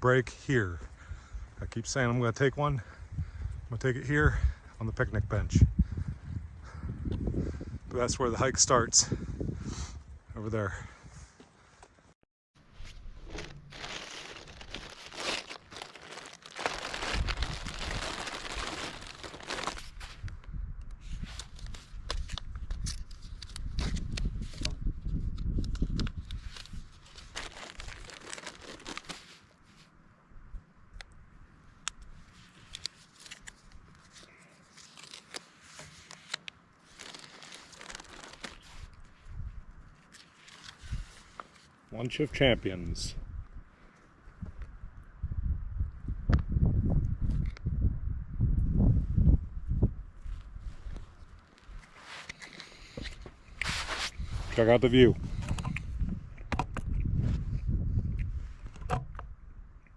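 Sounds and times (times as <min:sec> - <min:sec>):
plastic packaging crinkling: 0:12.8 - 0:20.3, 0:25.8 - 0:29.5, 0:32.5 - 0:39.0.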